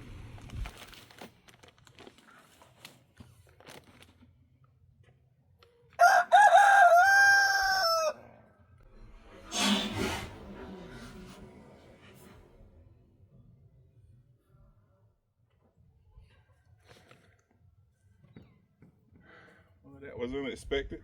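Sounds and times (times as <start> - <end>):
rooster crowing: 6.0 - 8.4.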